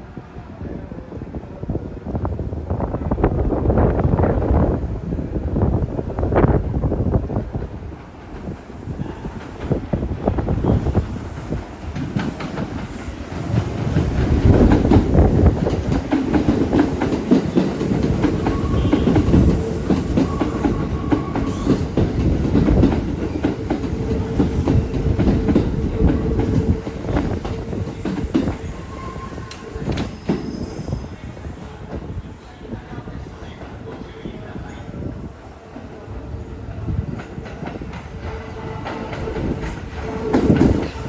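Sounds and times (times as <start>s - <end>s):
train wheels clattering: 7.9s - 30.8s, 37.0s - 41.0s.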